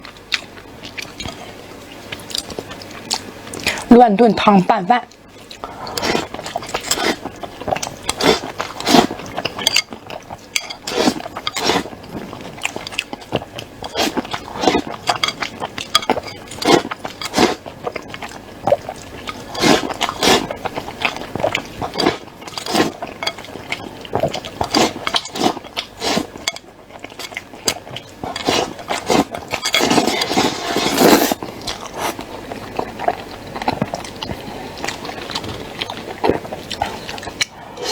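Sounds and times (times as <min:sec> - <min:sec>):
wet chewing and biting: 0:05.1 - 0:37.9
spoon scraping a bowl: 0:10.6 - 0:11.9, 0:28.2 - 0:31.4.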